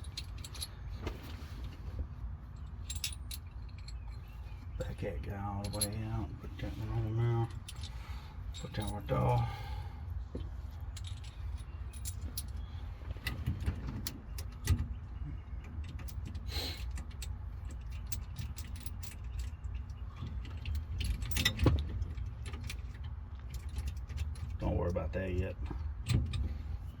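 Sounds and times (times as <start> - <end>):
metal parts clinking: 0.0 - 1.7, 2.5 - 4.8, 5.5 - 6.3, 7.0 - 9.5, 10.9 - 14.8, 15.8 - 24.6
steady low hum: 0.0 - 27.0.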